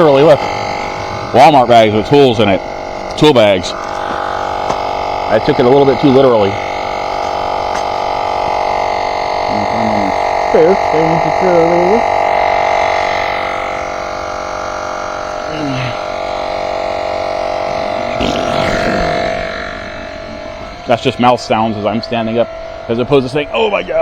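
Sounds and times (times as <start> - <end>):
tire inflator humming: 0.0 - 24.0
man's wordless mouth sounds: 18.1 - 19.2.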